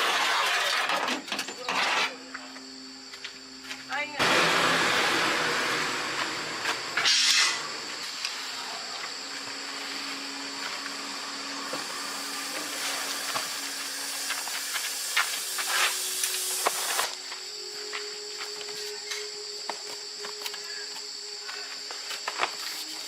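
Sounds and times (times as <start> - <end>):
pressurised gas hissing: 11.2 - 17.7.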